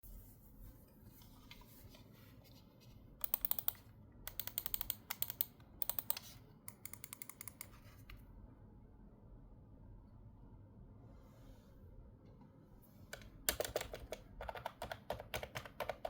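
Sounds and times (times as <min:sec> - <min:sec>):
keyboard typing: 0:03.2 - 0:07.8, 0:13.2 - 0:16.0.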